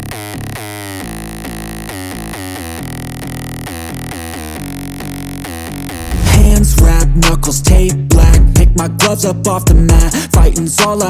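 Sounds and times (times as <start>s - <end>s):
steady bass: 5.7s - 10.0s
synthesizer riff with sliding notes: 5.8s - 8.8s.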